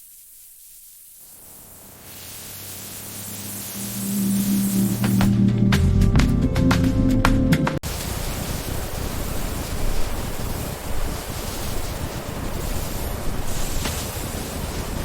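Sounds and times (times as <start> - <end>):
steady rushing noise: 1.9 - 5.9, 7.8 - 15.0
music: 4.3 - 7.8.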